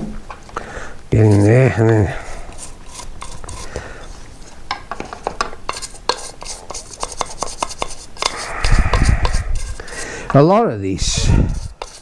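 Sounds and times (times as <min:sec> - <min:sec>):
hand tool scraping and clicking: 0:01.2 - 0:03.9, 0:04.7 - 0:10.4, 0:11.3 - 0:12.0.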